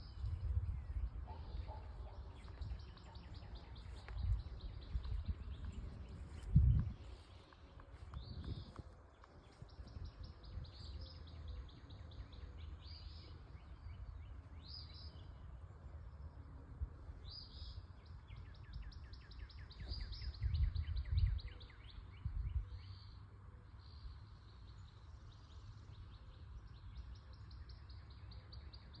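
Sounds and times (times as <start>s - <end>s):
low rumble: 0.0s - 8.8s
songbirds trilling: 0.0s - 29.0s.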